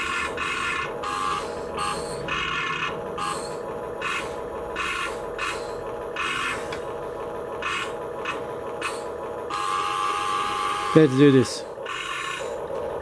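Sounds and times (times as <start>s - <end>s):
steady hum: 0.0s - 13.0s
small gear motors whirring: 7.6s - 12.7s.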